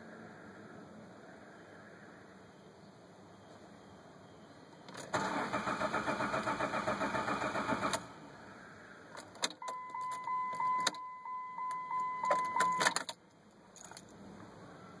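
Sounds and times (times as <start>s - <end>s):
car starter motor cranking: 4.9s - 8.2s
electronic warning chime: 9.6s - 12.9s.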